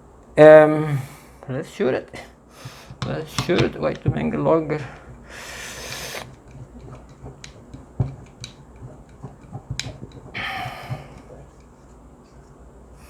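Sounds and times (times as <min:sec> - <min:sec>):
short air hiss bursts: 0:02.5 - 0:03.5, 0:05.2 - 0:06.6.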